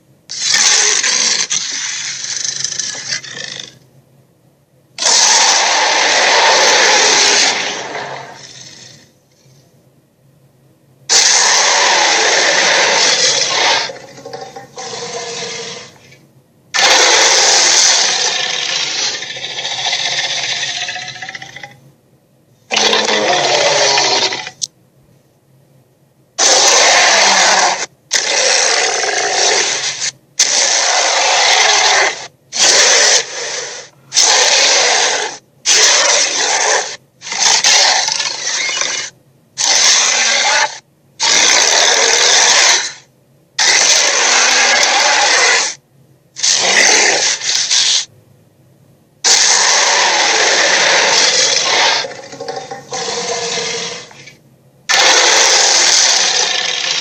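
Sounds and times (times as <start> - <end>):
dragon growls and roars: 5.0 - 9.1, 11.1 - 16.0, 16.8 - 21.8, 22.7 - 24.6, 26.4 - 43.0, 43.6 - 45.8, 49.3 - 57.0.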